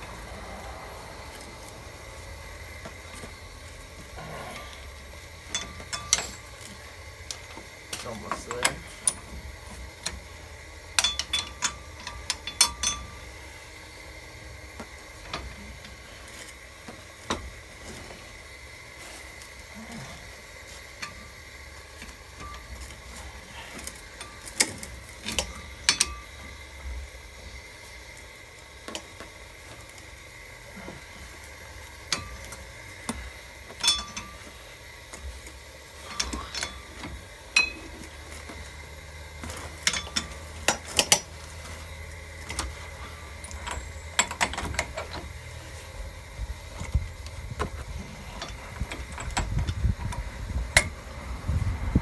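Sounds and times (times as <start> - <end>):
wrench clinking on metal: 4.5 - 10.3, 10.9 - 13.5, 22.0 - 26.6, 32.0 - 35.3, 36.0 - 45.7.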